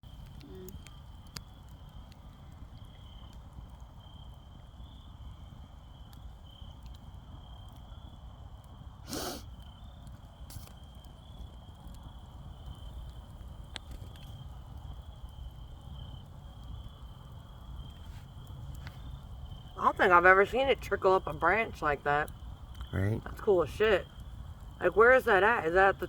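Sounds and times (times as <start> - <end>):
bonfire crackling: 0.0 - 26.0
fire hissing burst: 9.0 - 9.6, 10.4 - 10.8.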